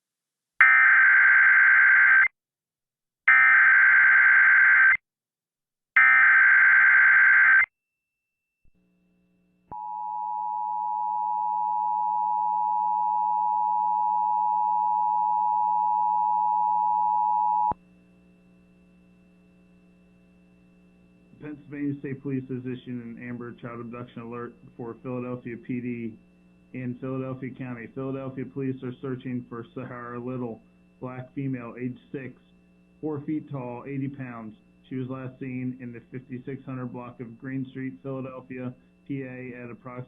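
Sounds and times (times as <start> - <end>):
faint hum: 8.6 - 40.0.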